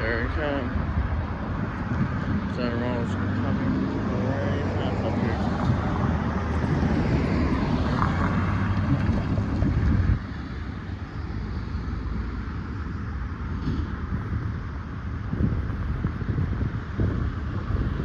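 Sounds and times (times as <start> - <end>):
track and wheel noise: 0.0 - 18.0.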